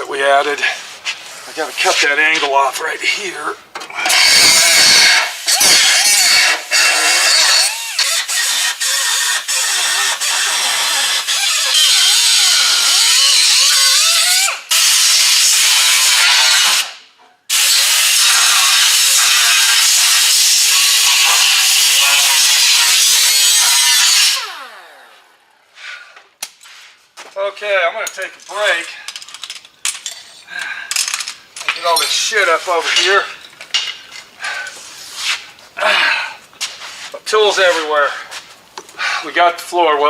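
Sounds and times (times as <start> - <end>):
cut-off tool grinding steel: 4.0 - 16.9, 17.5 - 25.0.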